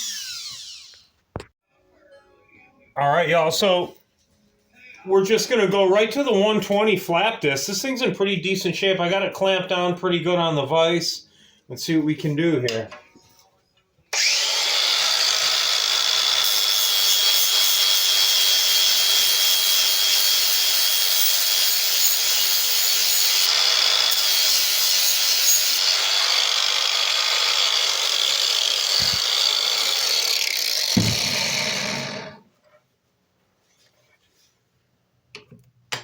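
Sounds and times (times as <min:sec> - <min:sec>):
power grinder sanding steel: 0:00.0 - 0:01.1, 0:14.2 - 0:32.4
low knocks: 0:31.0 - 0:31.4.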